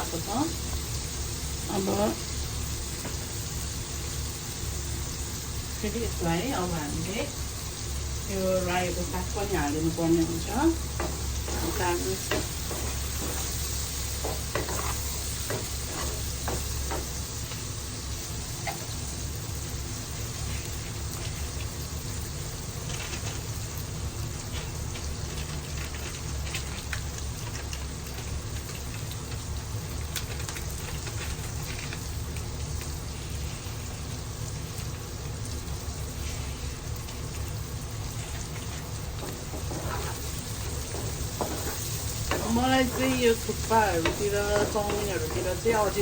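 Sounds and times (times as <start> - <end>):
vegetables sizzling in a pan: 0.0 - 46.0
faint stirring clicks: 36.9 - 46.0.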